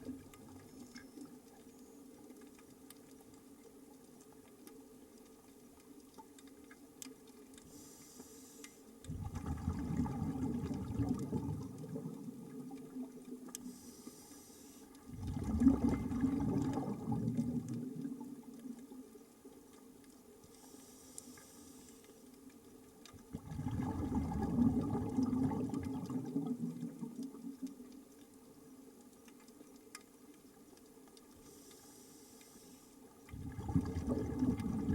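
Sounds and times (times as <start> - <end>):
faint steady hum: 0.0 - 34.9
bubbling exhale: 9.1 - 12.5, 15.1 - 17.9, 23.3 - 27.1, 33.3 - 34.9.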